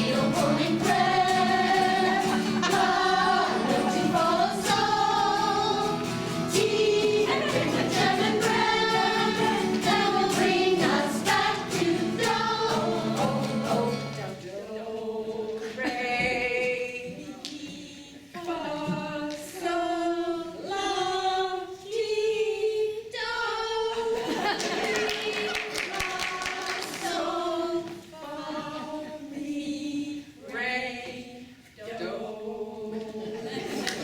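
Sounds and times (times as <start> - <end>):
women's choir singing: 0.0 - 34.0.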